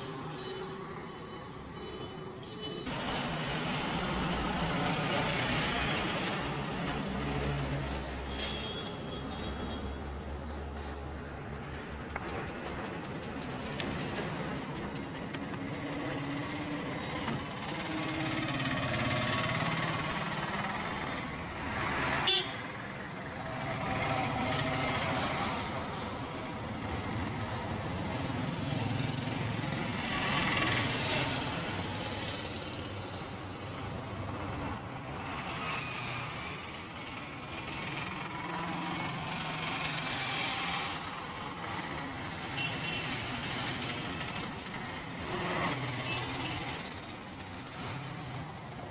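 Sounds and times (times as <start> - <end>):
street traffic: 0.0 - 48.9
car horns honking: 22.2 - 22.6.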